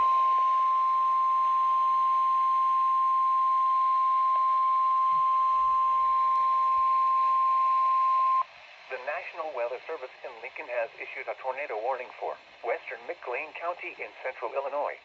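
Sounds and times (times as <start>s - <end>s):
steady alarm tone: 0.0s - 8.4s
faint radio hiss: 0.0s - 15.0s.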